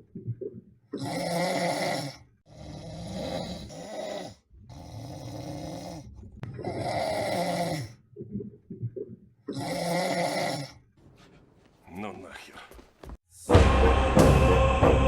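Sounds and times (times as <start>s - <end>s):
person snoring heavily: 1.0s - 7.9s, 9.5s - 10.8s.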